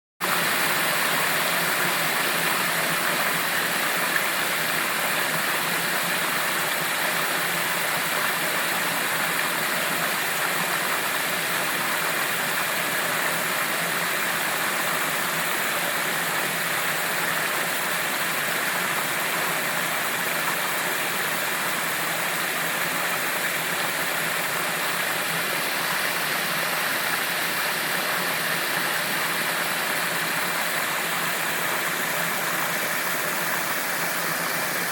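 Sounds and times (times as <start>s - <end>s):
water rushing through sluice gate: 0.2s - 34.9s.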